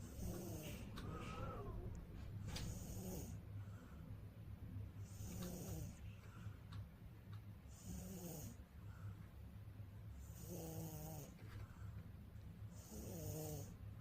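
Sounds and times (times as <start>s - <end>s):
baby snoring: 0.0s - 1.9s, 2.6s - 3.4s, 5.0s - 6.0s, 7.7s - 8.6s, 10.4s - 11.4s, 12.8s - 13.8s.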